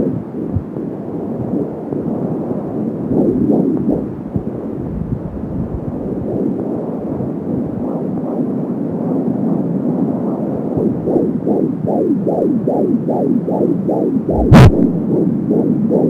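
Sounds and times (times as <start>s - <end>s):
fetal heartbeat whooshes: 0.0s - 0.8s, 1.4s - 1.7s, 3.1s - 6.6s, 9.9s - 16.0s
rough rumbling static: 0.0s - 16.0s.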